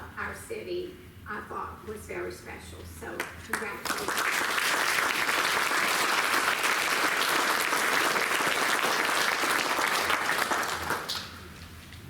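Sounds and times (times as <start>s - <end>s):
audience applauding: 3.8s - 11.4s.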